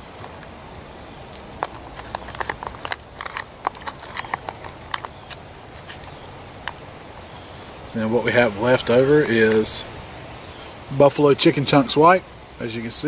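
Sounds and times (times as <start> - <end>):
food pouch crinkling: 1.6 - 6.8
plastic spoon scraping: 1.6 - 6.8.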